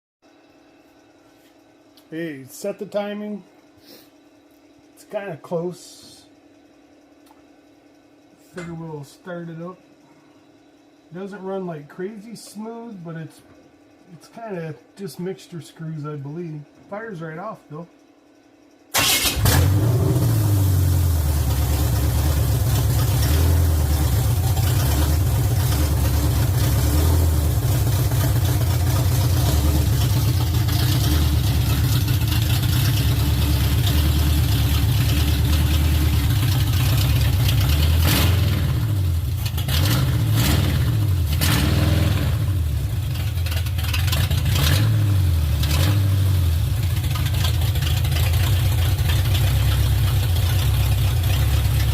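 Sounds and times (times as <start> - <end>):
car engine starting and idling: 18.9 - 51.9
engine revving: 19.0 - 46.6.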